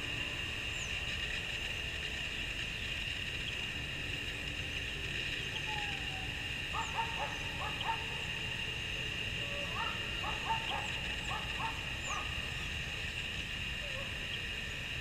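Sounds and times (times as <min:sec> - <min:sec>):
steady high hum: 0:00.0 - 0:15.0
dog yapping: 0:06.8 - 0:08.1, 0:09.7 - 0:12.3.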